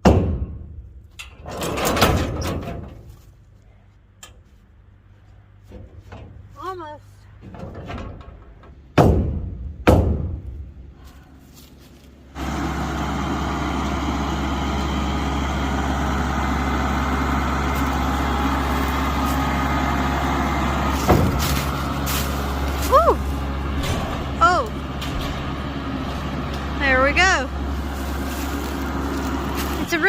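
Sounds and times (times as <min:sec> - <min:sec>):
loud knocks: 0:00.0 - 0:00.8, 0:09.0 - 0:10.6, 0:20.9 - 0:21.6
vehicle engine running: 0:10.4 - 0:30.0.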